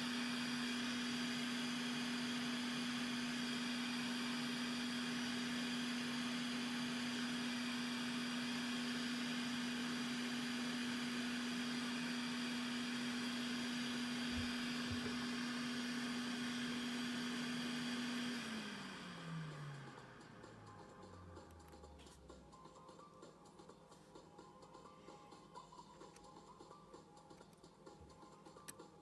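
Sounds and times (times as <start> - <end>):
electric blower motor humming: 0.0 - 22.3.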